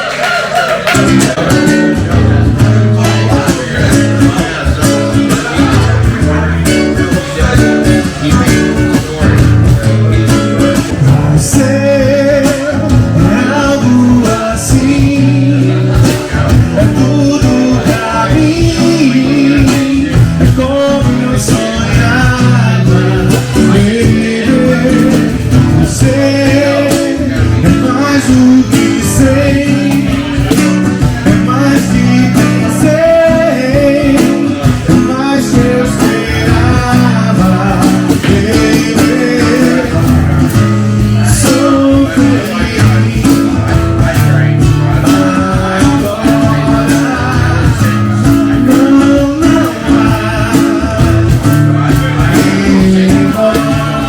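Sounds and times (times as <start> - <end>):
guitar song with singing: 0.0 - 54.0
steady bass line: 0.0 - 54.0.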